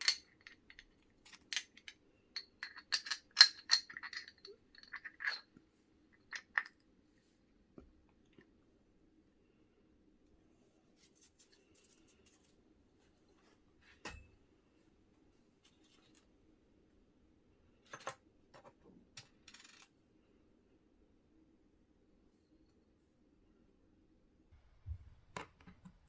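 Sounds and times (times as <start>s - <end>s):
small parts clicking: 0.0s - 5.4s.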